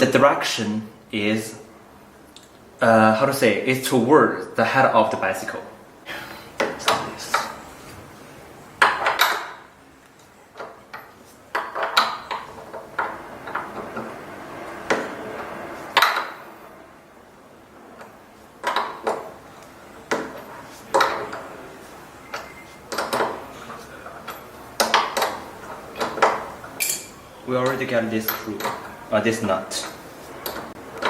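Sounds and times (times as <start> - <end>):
wrench clinking on metal: 26.0 - 27.2.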